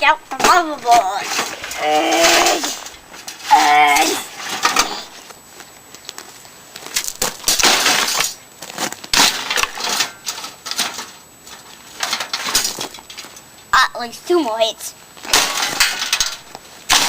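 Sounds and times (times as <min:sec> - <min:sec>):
metal computer parts clattering: 0:09.2 - 0:11.2, 0:12.0 - 0:13.2, 0:15.3 - 0:17.0.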